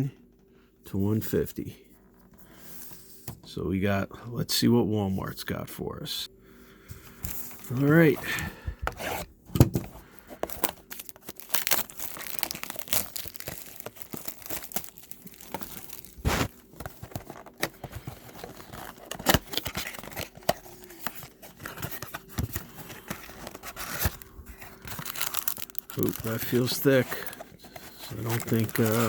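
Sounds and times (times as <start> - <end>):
packaging crinkling and tearing: 10.1 - 29.0
wrapper snaps: 24.8 - 26.6.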